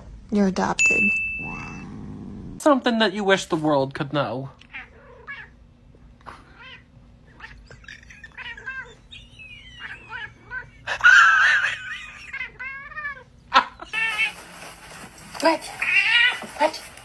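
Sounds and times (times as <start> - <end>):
cat yowl: 6.5 - 13.3
cat meowing and chirping: 6.6 - 10.8, 12.1 - 14.3.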